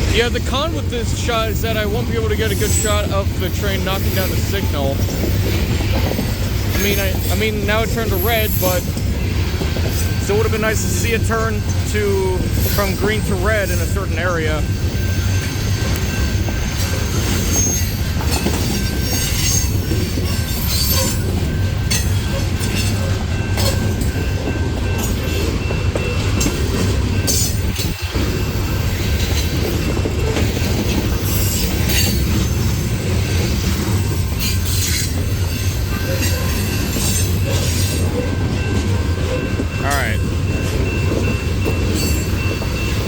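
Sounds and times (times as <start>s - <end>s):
train wheels rumbling on rail: 0.0s - 43.0s
high wheel squeal: 1.5s - 24.3s.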